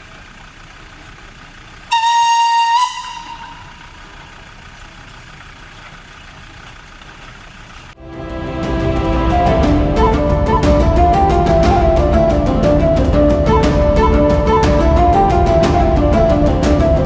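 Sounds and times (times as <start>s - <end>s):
loud whistle blast: 1.9s - 4.0s, 9.2s - 17.0s.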